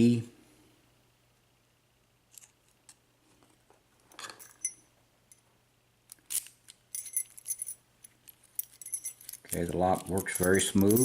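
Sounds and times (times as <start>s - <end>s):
key scraping: 6.3s - 11.0s
lock and key clicking: 8.4s - 11.0s.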